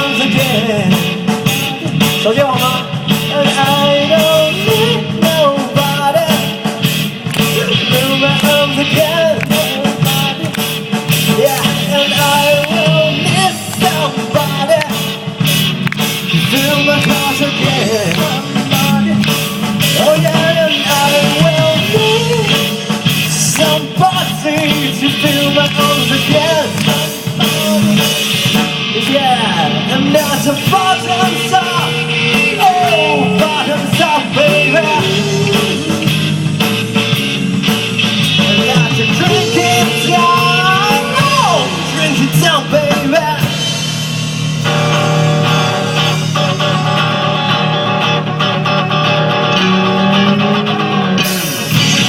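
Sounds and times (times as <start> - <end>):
rock band playing: 0.0 - 52.0
lead melody bending in pitch: 44.6 - 52.0.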